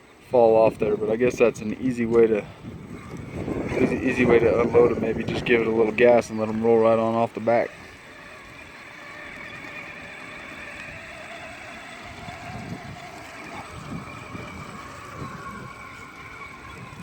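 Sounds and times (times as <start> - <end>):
tires crunching over dirt: 0.0 - 17.0
toy truck motor whine: 0.0 - 17.0.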